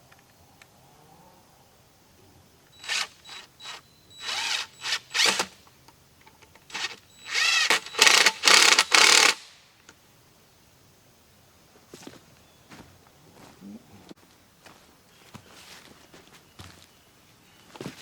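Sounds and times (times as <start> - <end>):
power drill bursts: 2.7 - 5.6, 6.7 - 9.5.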